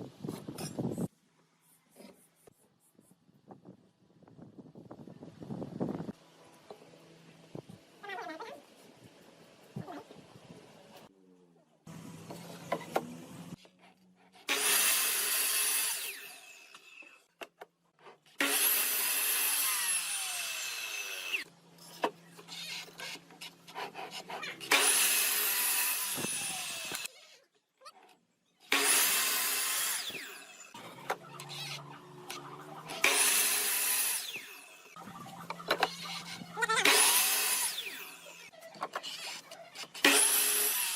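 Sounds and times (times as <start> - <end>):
power tool cutting wood: 14.5 - 17.2, 18.4 - 21.5, 22.4 - 27.1, 28.7 - 40.9.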